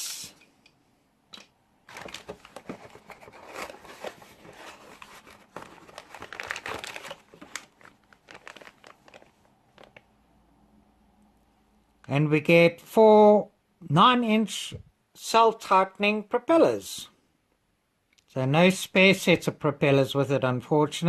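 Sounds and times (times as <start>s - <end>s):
plastic packaging crinkling: 1.9s - 10.1s.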